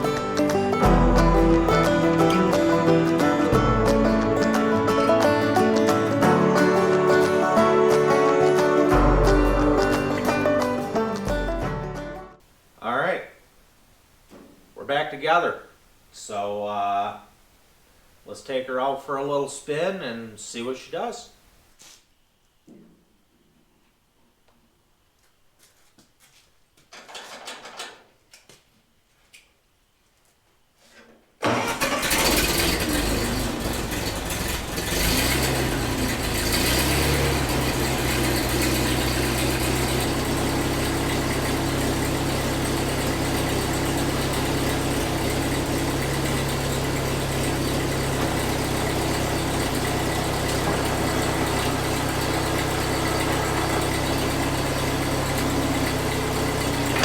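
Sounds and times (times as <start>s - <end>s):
tractor engine starting: 0.0s - 7.9s, 31.4s - 57.0s.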